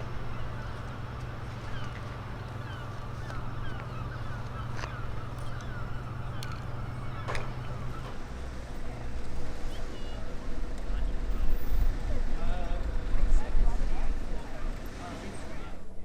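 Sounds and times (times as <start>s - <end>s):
gulls calling: 0.0s - 15.8s.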